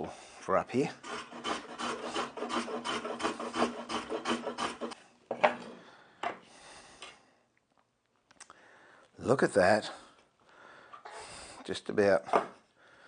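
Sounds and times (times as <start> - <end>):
tool scraping on wood: 0.9 - 5.8.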